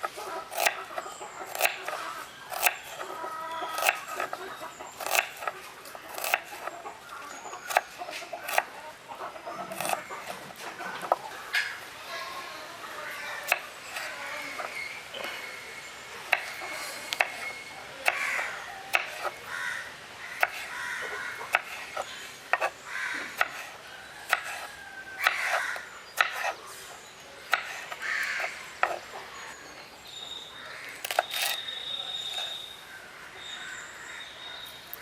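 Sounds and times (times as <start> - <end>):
knife chopping on wooden board: 0.5 - 3.0, 5.0 - 5.5, 6.1 - 6.7, 18.9 - 19.3, 20.4 - 20.7, 21.5 - 21.8, 23.4 - 23.7, 24.3 - 25.6, 26.2 - 26.6, 31.0 - 31.6.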